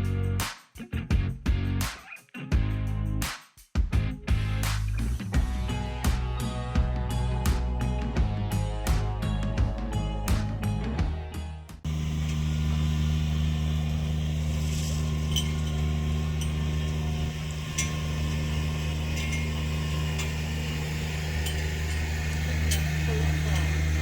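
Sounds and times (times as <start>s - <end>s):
light metallic clinks: 11.9s - 24.0s
low mechanical hum: 11.9s - 24.0s.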